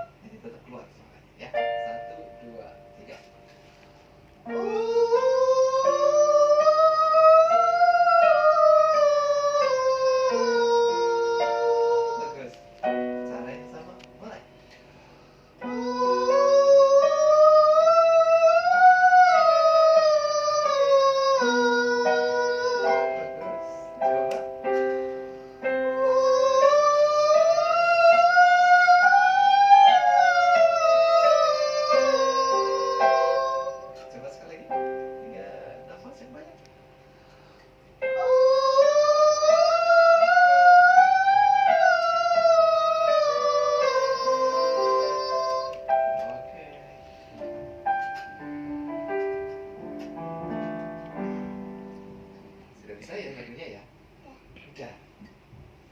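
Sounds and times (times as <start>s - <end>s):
piano chords: 0.0s - 53.6s
person singing vocal glide: 4.5s - 12.6s, 15.6s - 24.1s, 25.6s - 34.2s, 38.0s - 46.3s.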